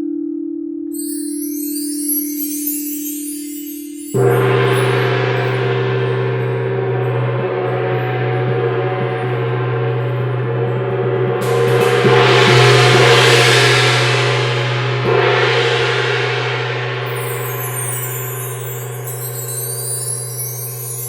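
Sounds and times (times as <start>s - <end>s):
singing bowl tone: 0.0s - 12.6s, 17.1s - 21.0s
gong ringing: 3.8s - 15.3s.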